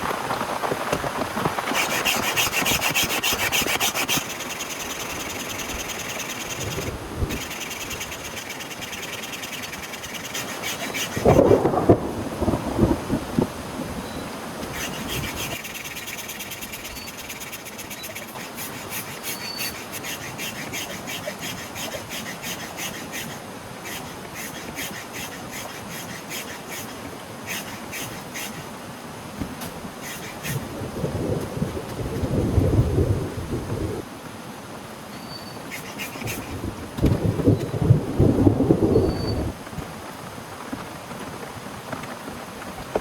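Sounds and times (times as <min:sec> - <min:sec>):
heavy rain: 0:00.0 - 0:02.0, 0:10.6 - 0:15.6, 0:30.6 - 0:35.0, 0:36.5 - 0:43.0.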